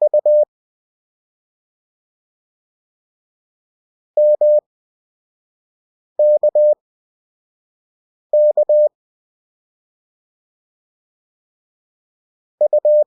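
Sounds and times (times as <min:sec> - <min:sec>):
morse code beeps: 0:00.0 - 0:00.4, 0:04.2 - 0:04.6, 0:06.2 - 0:06.8, 0:08.4 - 0:08.9, 0:12.6 - 0:13.0.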